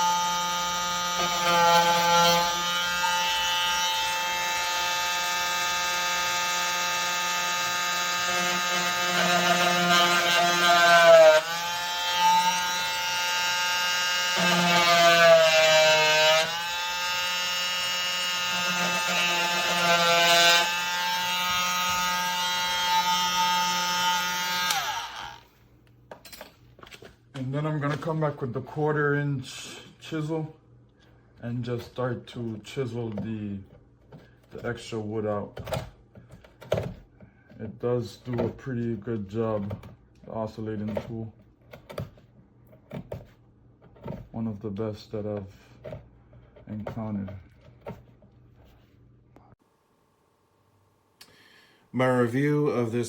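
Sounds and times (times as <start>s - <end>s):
oscillating multi-tool cutting wood: 0.0s - 25.5s.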